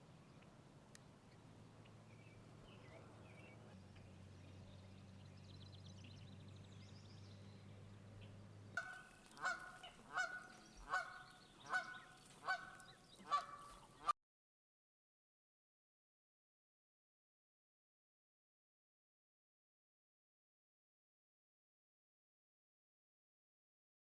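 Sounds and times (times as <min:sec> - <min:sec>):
faint low hum: 0:00.0 - 0:14.1
goose honking: 0:08.8 - 0:14.1.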